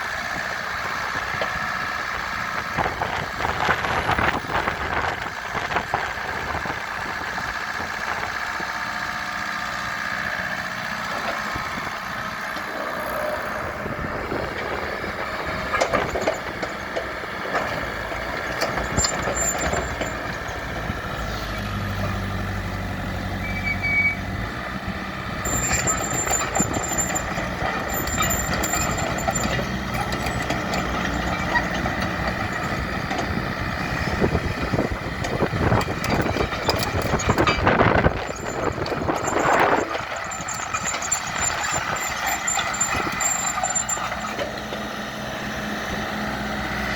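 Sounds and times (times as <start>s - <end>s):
diesel engine running: 0.0s - 46.9s
short high-pitched beeps: 23.4s - 24.2s.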